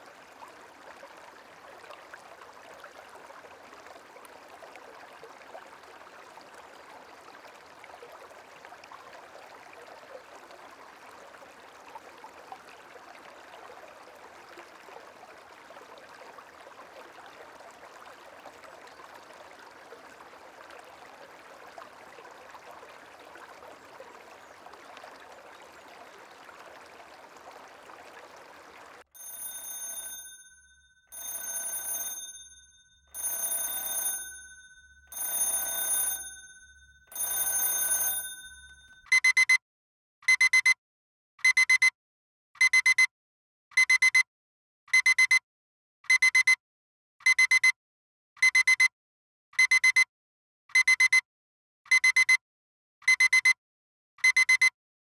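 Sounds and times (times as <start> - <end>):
soft flowing water: 0.0 - 39.0
ringing alarm tone: 29.2 - 39.1
alarm clock beeping: 29.2 - 39.5.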